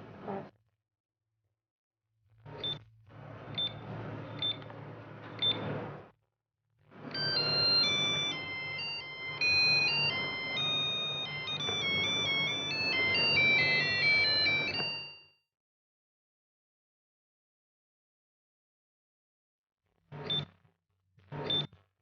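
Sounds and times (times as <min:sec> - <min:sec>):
alarm clock beeping melody: 0:07.1 - 0:15.4.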